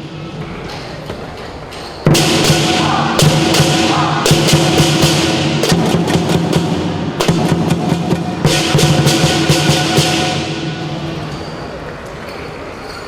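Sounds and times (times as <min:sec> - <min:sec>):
gong ringing: 0:02.1 - 0:07.0
large drum beaten steadily: 0:02.1 - 0:11.4
hand cymbals clashing: 0:02.1 - 0:12.6.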